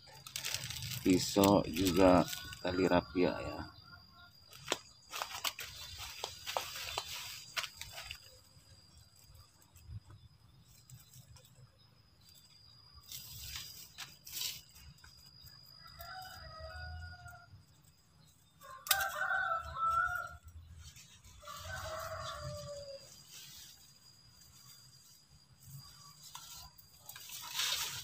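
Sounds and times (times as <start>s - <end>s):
rooster crowing: 15.6s - 17.6s, 18.6s - 20.5s, 21.3s - 23.2s.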